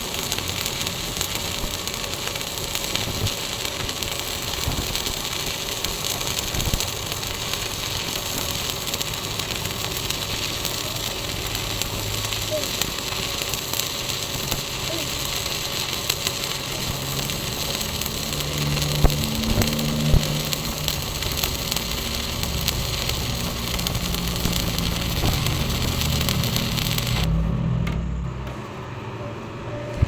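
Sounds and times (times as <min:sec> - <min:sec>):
welding arc crackling: 0:00.0 - 0:29.0
low engine-like hum: 0:16.3 - 0:30.0.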